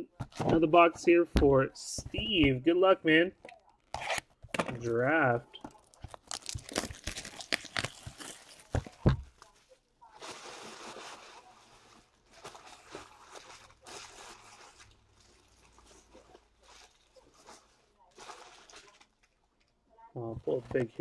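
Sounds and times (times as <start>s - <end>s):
wrappers and cards rustling: 5.6s - 19.7s.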